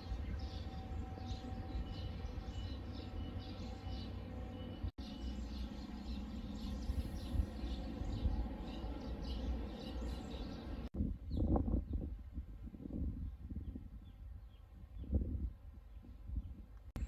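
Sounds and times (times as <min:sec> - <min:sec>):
small birds chirping: 0:00.0 - 0:12.1
steady low rumble: 0:05.0 - 0:11.2.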